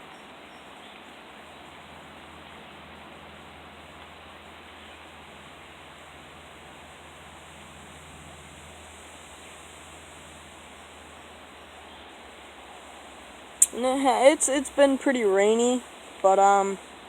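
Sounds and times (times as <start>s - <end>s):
steady wind noise: 0.0s - 17.0s.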